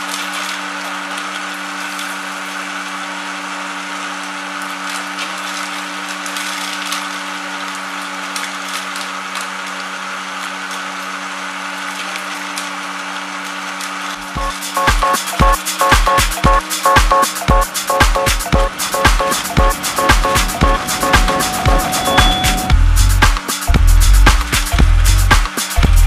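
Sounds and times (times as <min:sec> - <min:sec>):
motor hum: 0:14.4 - 0:25.2.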